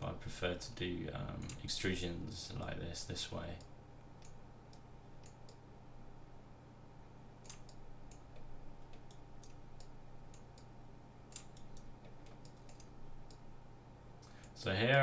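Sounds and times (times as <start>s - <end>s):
steady low hum: 0.0s - 15.0s
computer mouse and keyboard clicks: 7.4s - 10.7s, 11.3s - 13.4s.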